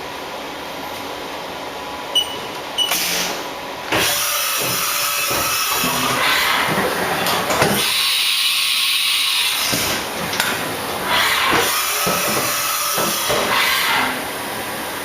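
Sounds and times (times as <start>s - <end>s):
short high beeps: 2.2s - 3.0s
machine whirring: 2.2s - 15.0s.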